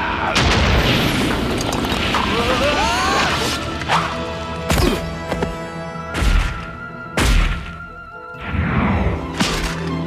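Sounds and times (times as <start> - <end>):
orchestral music with held chords: 3.5 - 10.0.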